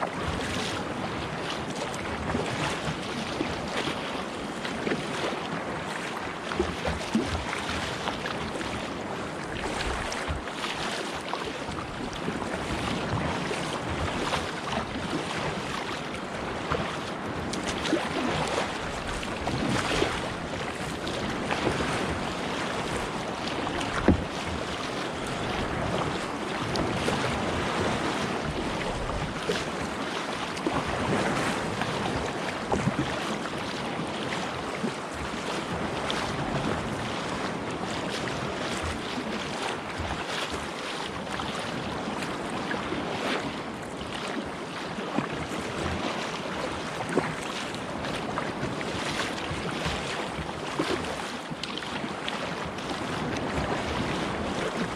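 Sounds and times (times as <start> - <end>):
water splashing around a kayak: 0.0 - 54.9
wind buffeting the microphone: 11.7 - 30.0
knocks on a kayak: 23.9 - 24.3.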